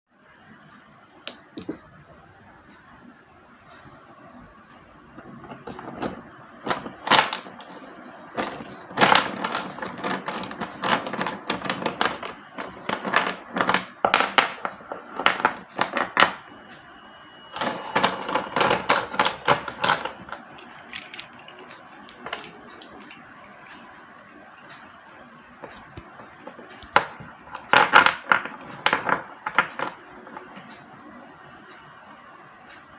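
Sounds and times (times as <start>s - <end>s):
slate pencils crunching: 17.6s - 30.5s.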